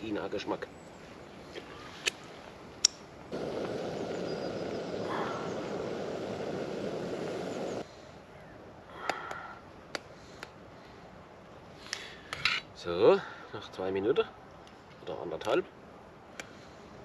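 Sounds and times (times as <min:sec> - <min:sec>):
gas burner flame: 0:02.8 - 0:07.9.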